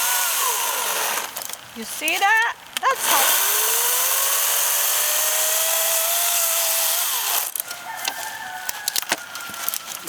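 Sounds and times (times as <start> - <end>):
chainsaw motor whining: 0.0 - 10.0
wood snapping and cracking: 0.4 - 2.9, 5.1 - 10.0.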